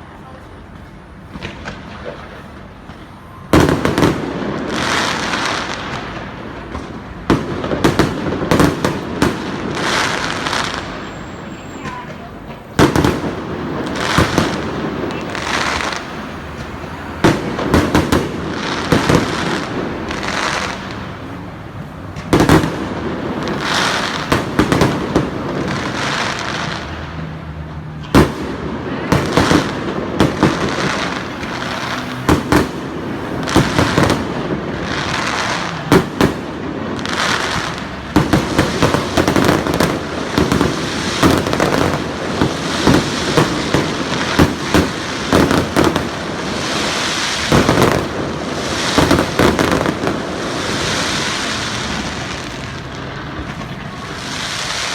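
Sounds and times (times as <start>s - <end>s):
fireworks crackling and hissing: 0.0s - 54.9s.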